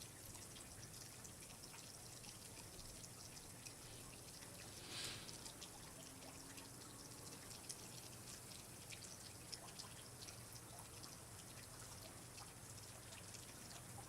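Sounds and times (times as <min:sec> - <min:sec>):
quiet hiss: 0:00.0 - 0:09.5
water dripping and trickling: 0:00.0 - 0:14.0.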